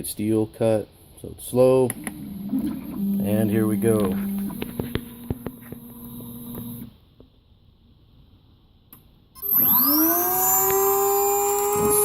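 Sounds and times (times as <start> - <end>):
cutter motor whine: 1.9 - 6.9, 9.4 - 12.0
key cutting machine hum: 2.0 - 6.9.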